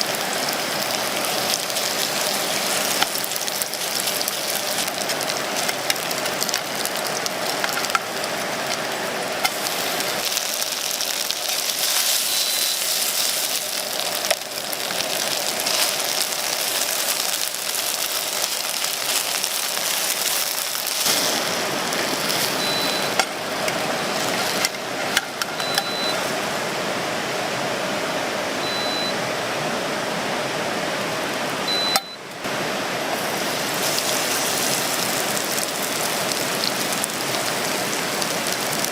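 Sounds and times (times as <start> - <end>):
steady rain falling: 0.0 - 28.6, 29.2 - 38.9
short high beeps: 12.3 - 12.9, 22.6 - 23.2, 25.6 - 26.2, 28.6 - 29.2, 31.7 - 32.2.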